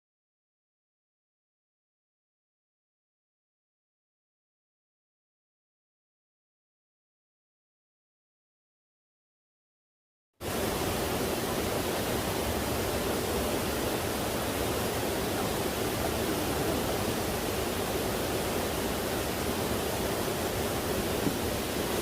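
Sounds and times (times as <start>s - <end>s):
steady rushing noise: 10.4s - 22.0s.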